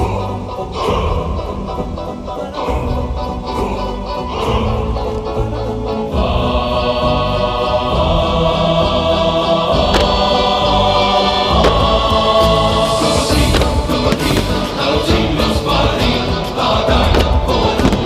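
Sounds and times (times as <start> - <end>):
choral music: 0.0 - 18.0
firework bangs: 9.7 - 18.0.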